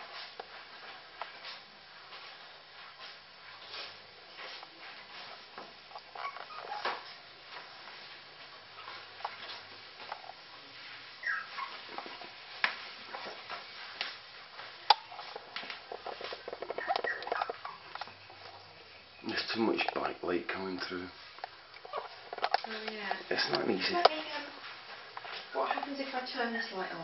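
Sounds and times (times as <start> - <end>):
puppies squeaking: 6.1 - 7.1, 11.2 - 11.9, 16.1 - 19.2, 21.8 - 22.3
puppies chewing food: 15.0 - 18.7.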